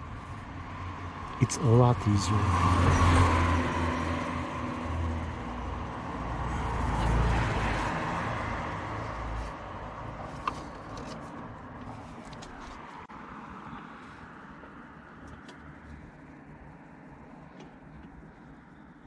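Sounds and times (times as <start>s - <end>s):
vehicle passing by: 0.8s - 10.2s.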